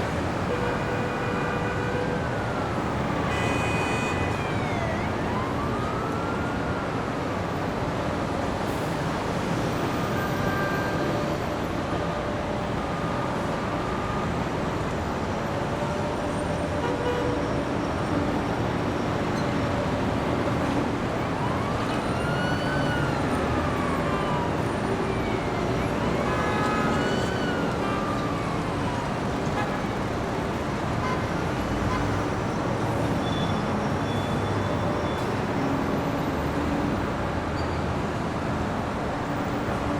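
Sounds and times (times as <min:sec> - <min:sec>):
emergency siren wailing: 0:00.0 - 0:08.6, 0:09.2 - 0:17.0, 0:19.7 - 0:30.7
passing vehicles: 0:01.6 - 0:39.9.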